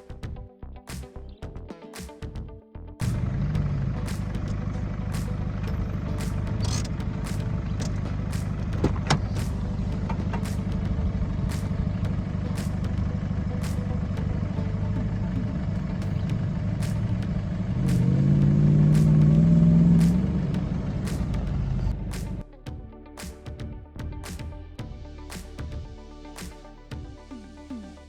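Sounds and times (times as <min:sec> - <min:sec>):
vehicle engine running: 0:03.0 - 0:22.4.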